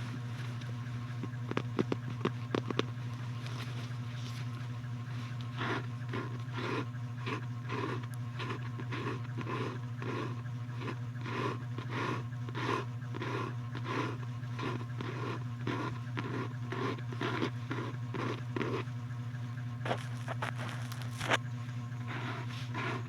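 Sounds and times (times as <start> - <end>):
steady low hum: 0.0 - 23.0
scraping strokes: 19.9 - 21.4.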